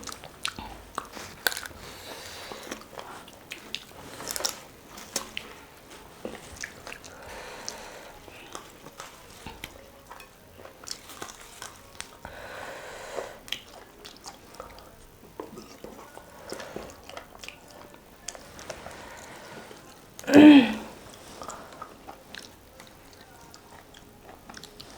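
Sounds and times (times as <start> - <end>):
mouth clicks and smacks: 0.0 - 12.2
chewing and biting: 0.0 - 20.3, 20.9 - 24.9.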